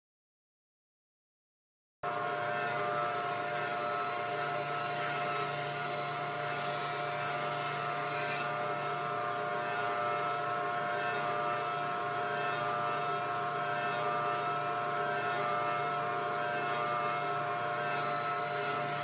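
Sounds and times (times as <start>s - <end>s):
power tool humming: 2.1s - 19.0s.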